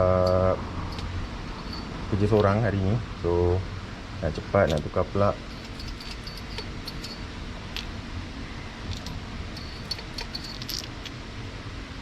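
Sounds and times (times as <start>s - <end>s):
steady low hum: 0.0s - 12.0s
hand tools clicking and rattling: 5.5s - 8.0s, 8.9s - 11.2s.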